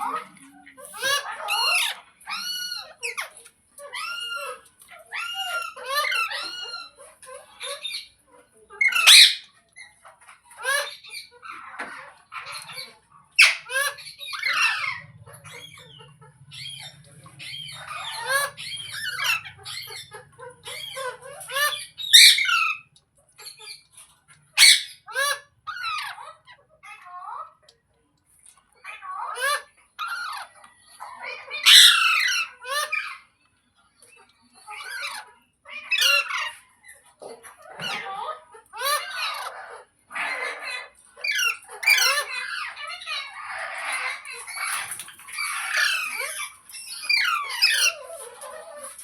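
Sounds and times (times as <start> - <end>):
parrot squawking and chattering: 0.0 - 27.7, 28.7 - 33.3, 34.1 - 49.0
parrot screeches: 0.8 - 7.0, 8.8 - 10.0, 13.4 - 15.9, 16.5 - 23.8, 24.6 - 27.0, 28.9 - 33.2, 34.7 - 49.0.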